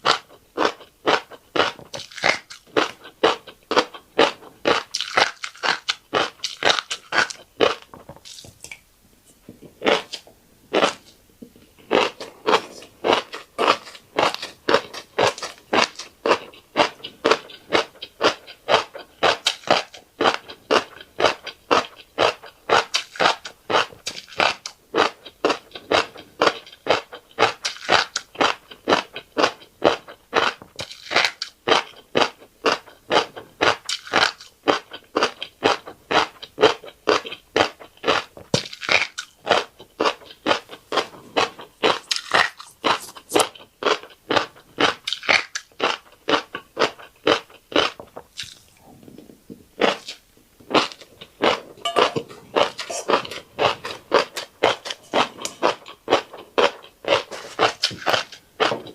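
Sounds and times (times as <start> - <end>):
chewing crunchy food: 0.0 - 58.9.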